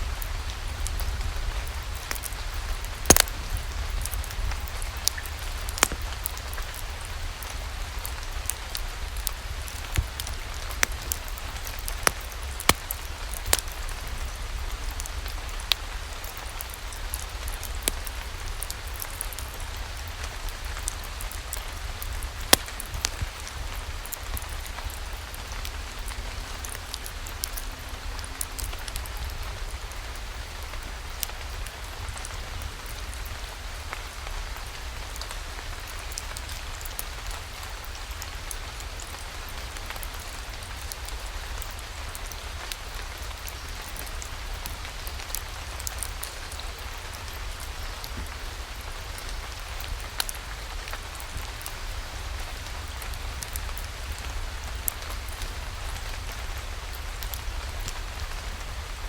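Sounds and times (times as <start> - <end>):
steady rain falling: 0.0 - 59.0
sharp drop ticks: 3.1 - 3.3.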